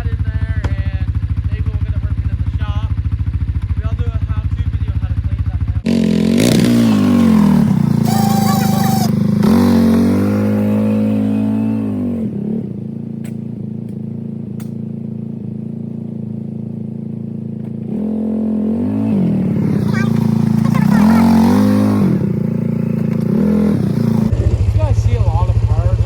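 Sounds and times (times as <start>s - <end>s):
quad bike engine revving: 5.8s - 13.0s, 17.5s - 26.0s
brief high squeal: 8.0s - 9.1s.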